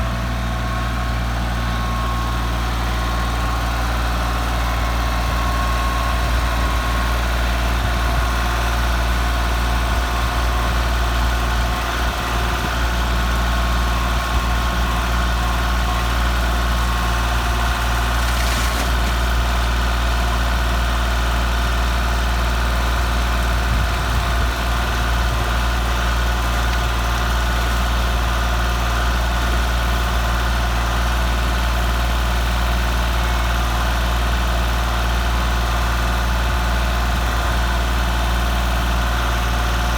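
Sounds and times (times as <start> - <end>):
vehicle engine humming: 0.0 - 33.6.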